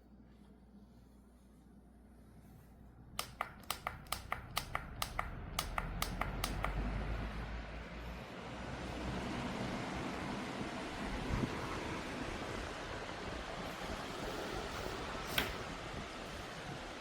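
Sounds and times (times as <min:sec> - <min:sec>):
fan blades rushing air: 0:01.3 - 0:17.0
fan button clicks: 0:03.2 - 0:07.0, 0:15.3 - 0:15.7.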